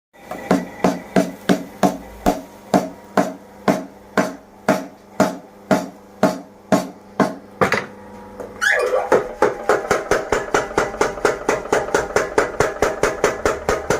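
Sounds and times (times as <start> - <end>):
power hammer striking metal: 9.1 - 13.9.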